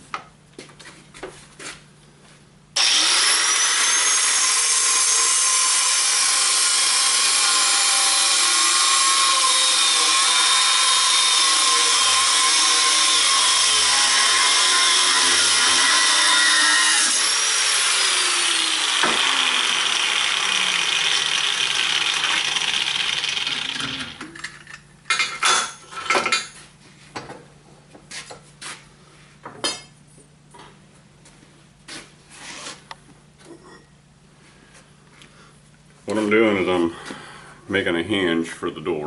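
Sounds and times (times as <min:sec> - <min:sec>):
power grinder grinding steel: 0:02.8 - 0:24.4.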